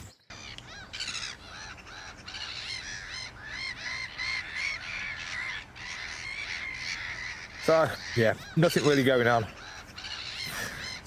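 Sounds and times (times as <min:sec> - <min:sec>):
birds calling shrill notes: 0:00.0 - 0:11.0.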